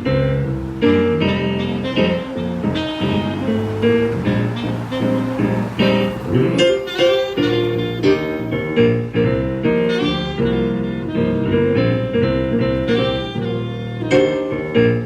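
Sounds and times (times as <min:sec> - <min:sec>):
keyboard accompaniment: 0:00.0 - 0:15.0
tenor saxophone jazz melody: 0:00.0 - 0:15.0.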